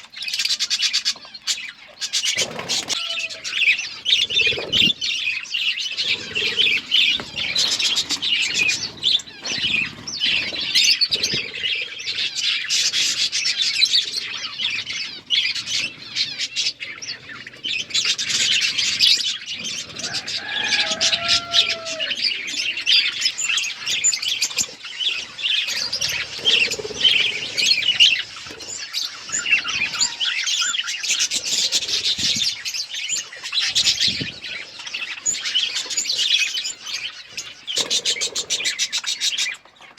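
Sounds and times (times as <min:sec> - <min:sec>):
budgies chattering: 0:00.0 - 0:39.9
drawn-out bird call: 0:00.8 - 0:39.6.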